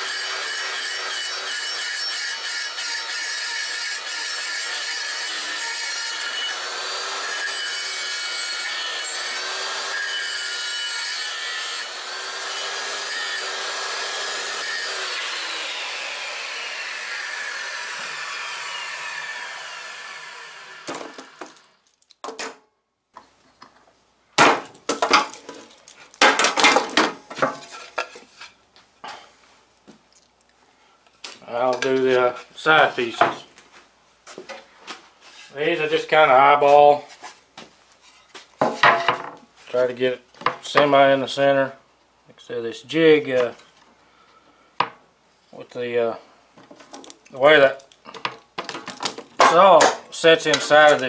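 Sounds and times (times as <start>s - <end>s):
power saw cutting wood: 0.0s - 21.7s, 49.4s - 51.0s
saw spinning down whine: 14.3s - 21.6s.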